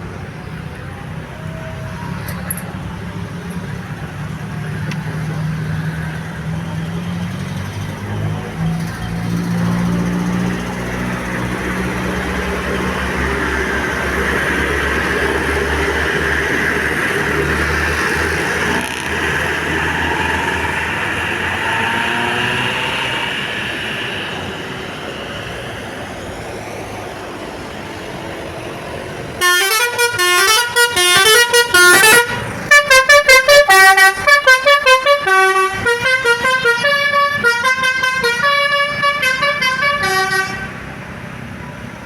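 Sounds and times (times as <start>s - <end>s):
bus engine and road noise: 0.0s - 42.0s
bus horn playing a tune: 15.0s - 24.4s, 29.4s - 40.9s.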